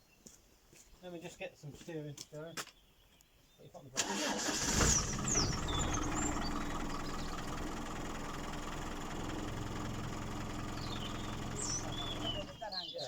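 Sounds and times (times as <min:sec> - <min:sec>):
birds chirping faintly: 0:00.0 - 0:04.0, 0:04.8 - 0:13.0
car engine idling: 0:04.4 - 0:12.7.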